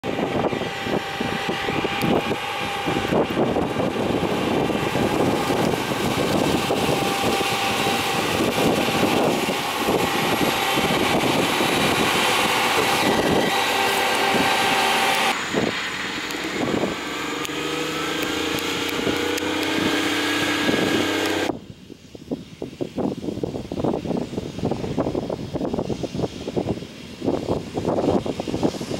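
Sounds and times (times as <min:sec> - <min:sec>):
combine harvester running: 0:00.0 - 0:21.6.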